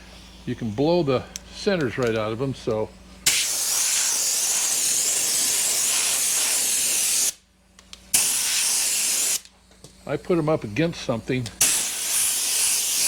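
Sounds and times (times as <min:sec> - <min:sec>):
compressed air blow gun hissing: 0:03.2 - 0:07.4, 0:08.1 - 0:09.5, 0:11.6 - 0:13.0.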